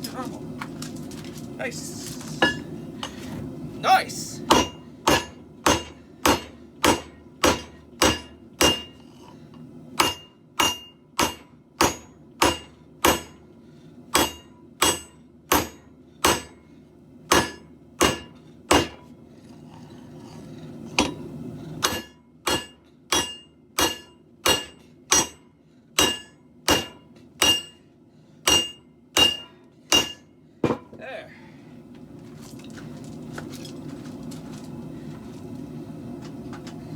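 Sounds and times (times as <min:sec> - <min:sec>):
hammer striking steel on anvil: 0:04.5 - 0:09.3, 0:10.0 - 0:13.4, 0:14.1 - 0:16.6, 0:17.3 - 0:19.1, 0:21.0 - 0:27.8, 0:28.4 - 0:30.9.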